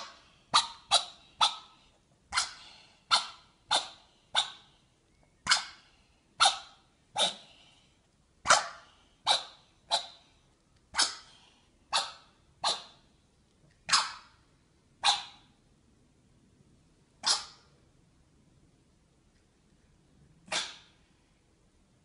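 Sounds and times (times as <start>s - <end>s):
cat coughing hiccups: 20.5s - 20.9s.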